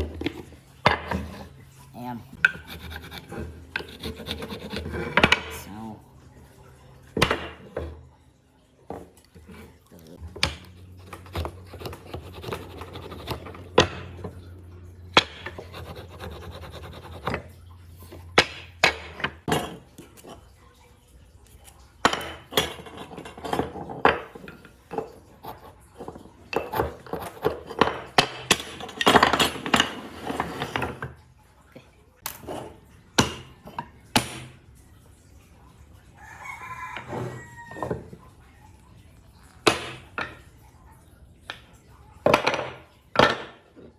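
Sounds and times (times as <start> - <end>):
rooster crowing: 36.2 - 38.1.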